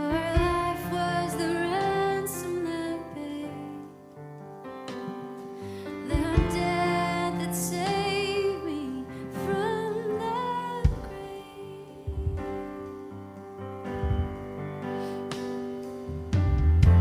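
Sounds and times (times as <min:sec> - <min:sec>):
woman singing with vibrato: 0:06.1 - 0:12.8
sustained keyboard chords: 0:06.1 - 0:17.0
deep bass notes: 0:12.1 - 0:12.9, 0:13.9 - 0:14.7, 0:16.1 - 0:17.0.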